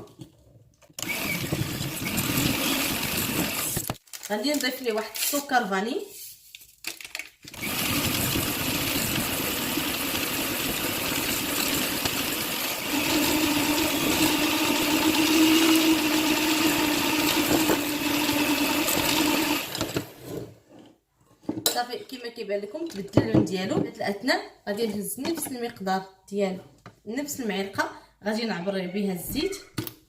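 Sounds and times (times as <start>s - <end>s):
electric mixer humming: 1.0s - 3.9s, 7.6s - 20.2s.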